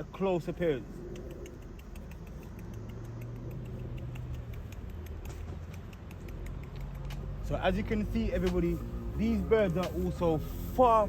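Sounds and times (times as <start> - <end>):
rapid mouth clicks: 0.8 - 7.5.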